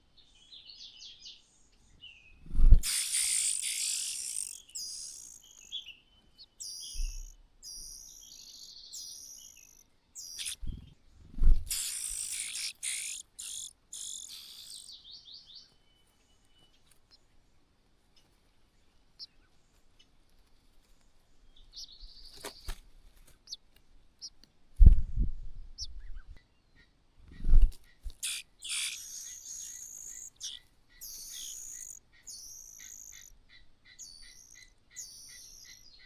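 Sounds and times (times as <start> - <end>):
bird chirping: 0.0 - 17.5, 18.1 - 22.8, 25.6 - 36.0
harsh noisy bursts: 11.7 - 14.8.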